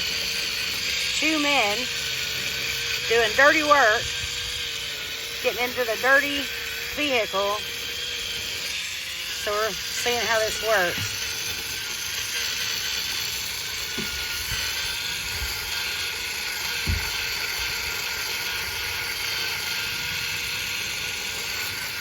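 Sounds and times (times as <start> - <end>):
spin scrubber motor whirring: 0.0 - 22.0
soft thumps: 16.8 - 17.1.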